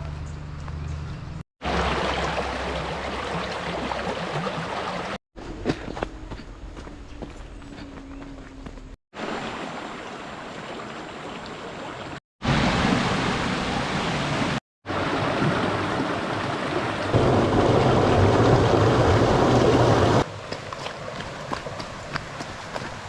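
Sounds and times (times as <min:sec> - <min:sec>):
water rushing: 0:01.6 - 0:05.2, 0:09.2 - 0:23.0.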